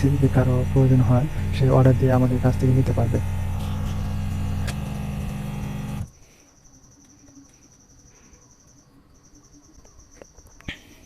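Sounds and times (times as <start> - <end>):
high-pitched cricket trill: 6.1 - 11.0.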